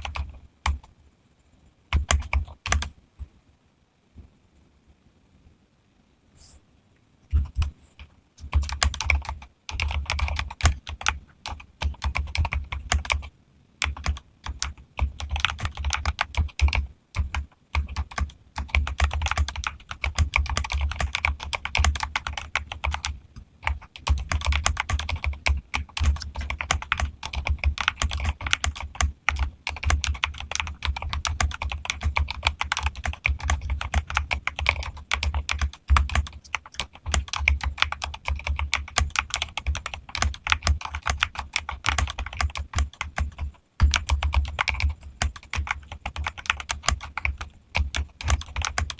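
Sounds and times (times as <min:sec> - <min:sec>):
mechanical keyboard typing: 0:00.0 - 0:00.9, 0:01.9 - 0:02.9, 0:08.4 - 0:48.9.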